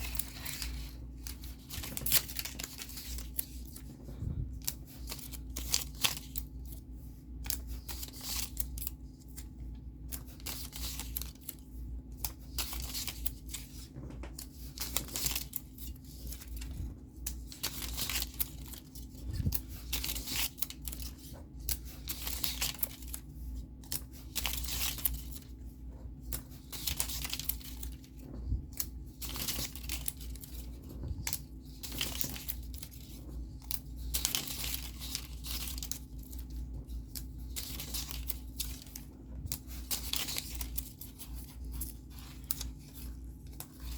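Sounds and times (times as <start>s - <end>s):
paper rustling and tearing: 0.0s - 25.6s, 26.2s - 43.9s
faint steady hum: 0.0s - 43.9s.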